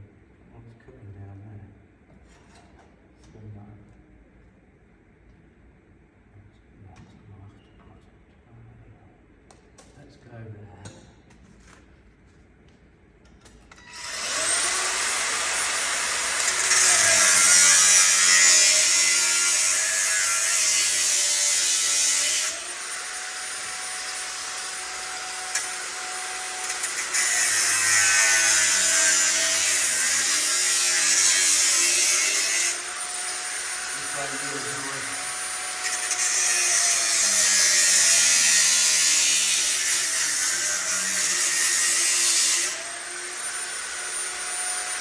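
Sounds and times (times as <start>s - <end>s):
electric power tool whining: 13.7s - 19.0s, 22.4s - 27.4s.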